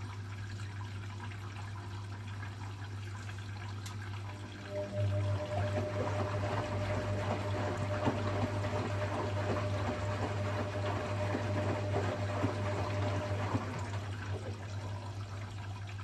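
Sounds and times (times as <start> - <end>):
water pouring into washing machine: 0.0 - 16.0.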